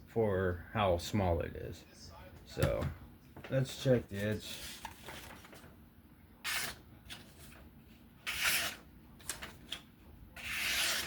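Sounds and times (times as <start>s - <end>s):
knife drawn through paper: 6.4s - 6.8s, 8.2s - 8.8s, 10.4s - 11.0s.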